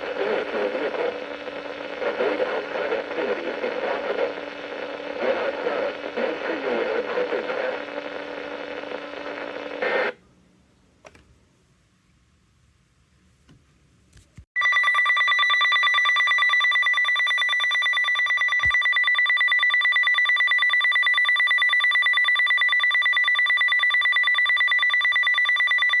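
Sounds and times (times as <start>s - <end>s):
pulsing electronic alarm beep: 14.6s - 26.0s.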